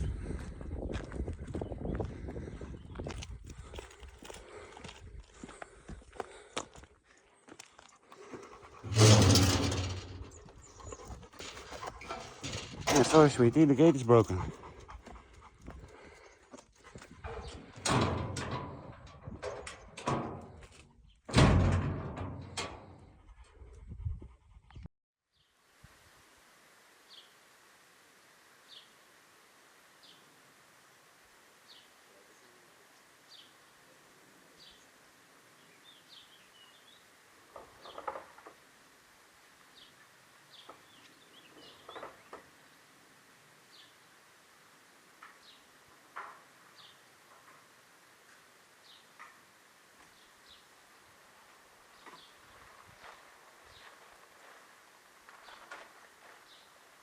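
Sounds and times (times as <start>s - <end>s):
gate clicking and rattling: 8.7s - 10.5s, 11.4s - 14.5s, 17.3s - 23.0s
knocking or clatter: 8.8s - 10.3s.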